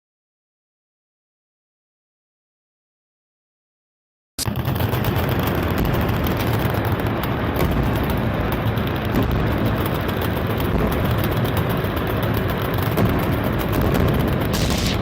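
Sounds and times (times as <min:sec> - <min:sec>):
rapid automatic gunfire: 0:04.4 - 0:15.0.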